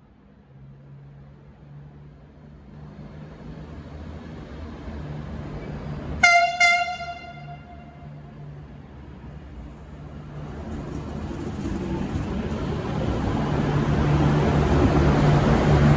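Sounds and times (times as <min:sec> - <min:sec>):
train rumble: 0:03.4 - 0:15.9
train horn: 0:06.2 - 0:08.2.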